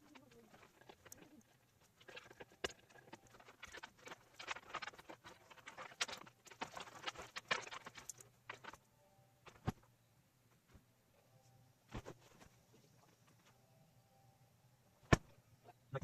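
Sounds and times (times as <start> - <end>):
hands rustling: 0.0 - 8.8.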